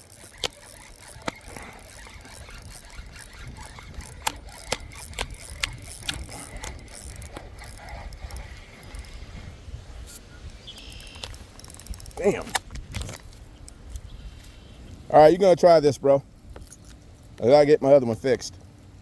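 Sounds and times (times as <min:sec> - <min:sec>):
reel gear clicks: 0:00.0 - 0:09.2, 0:10.1 - 0:14.1
fishing reel whine: 0:00.0 - 0:13.1.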